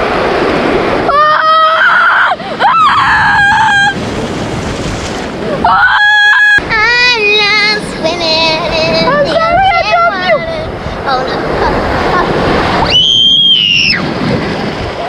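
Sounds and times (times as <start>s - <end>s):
steady rushing noise: 2.3s - 5.7s, 6.5s - 15.0s.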